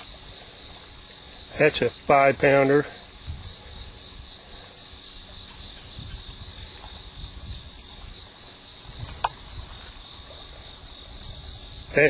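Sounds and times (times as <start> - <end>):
insects chorus: 0.0 - 12.0.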